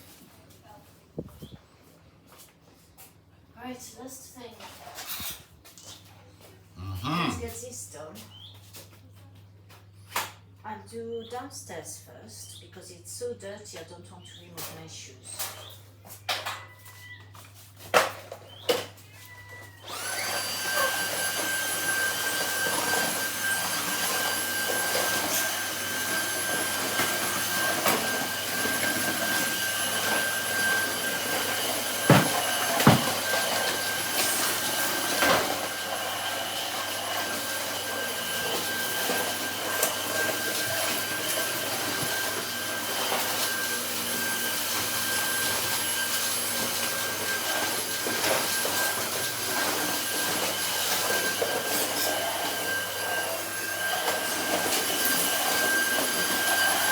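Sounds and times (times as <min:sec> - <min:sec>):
vacuum cleaner whining: 0:17.8 - 0:56.9.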